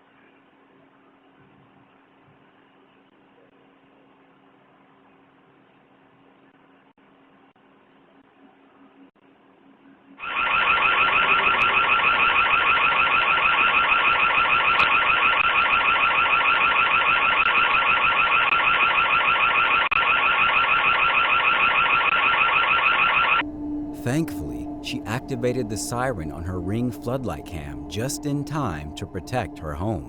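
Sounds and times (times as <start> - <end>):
warbling high-pitched alarm siren: 10.2 - 30.0.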